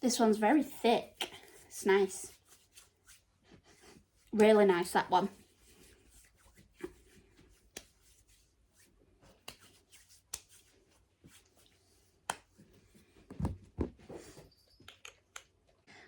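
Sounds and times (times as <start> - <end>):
hands rubbing: 0.2 - 13.3
soft thumps: 13.2 - 14.5.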